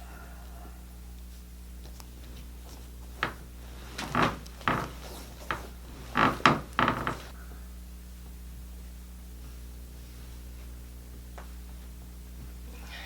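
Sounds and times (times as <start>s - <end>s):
steady low hum: 0.0s - 13.0s
knocks and scrapes of objects: 3.2s - 7.4s.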